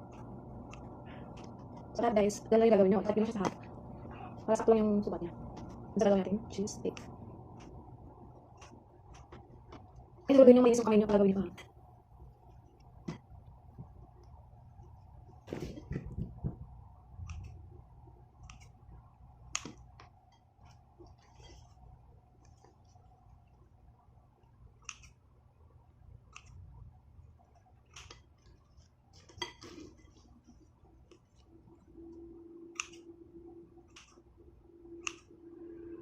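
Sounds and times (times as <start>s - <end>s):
faint steady hum: 0.0s - 36.0s
scissors snipping: 18.4s - 18.8s, 24.8s - 25.2s, 26.3s - 26.6s, 32.8s - 33.1s, 33.8s - 34.2s, 35.0s - 35.3s.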